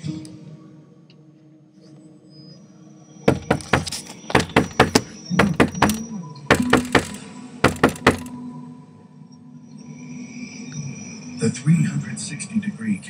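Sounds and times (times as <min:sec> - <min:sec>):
fist knocking on a door: 0:03.3 - 0:08.3.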